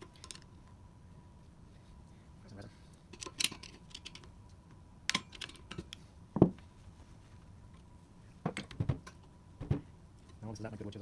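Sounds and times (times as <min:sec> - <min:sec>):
loud knock: 0:08.8 - 0:09.0, 0:09.6 - 0:09.9.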